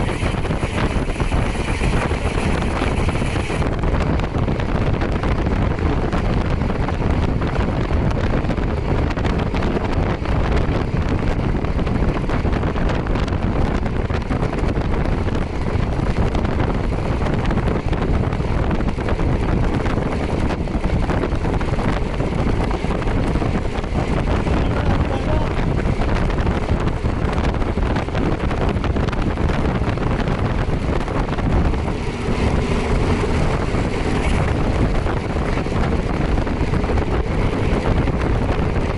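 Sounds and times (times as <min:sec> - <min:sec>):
wind rushing over microphone: 0:00.0 - 0:38.9
motorcycle engine: 0:18.0 - 0:38.9.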